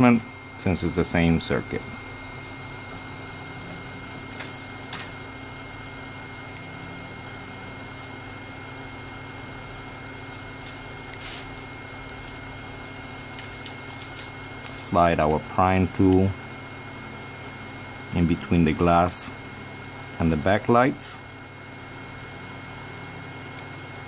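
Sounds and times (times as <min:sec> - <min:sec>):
heat gun blowing: 0:11.0 - 0:11.7.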